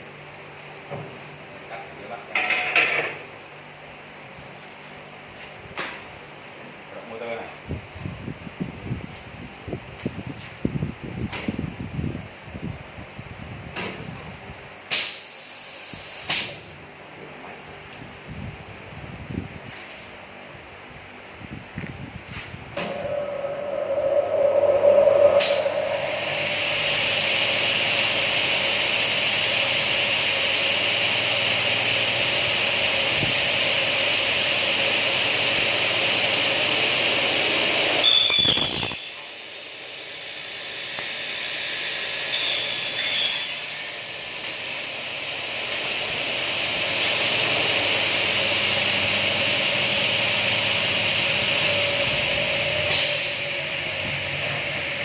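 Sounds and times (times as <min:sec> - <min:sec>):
cutting saw whining: 0:22.8 - 0:29.2, 0:37.5 - 0:45.8.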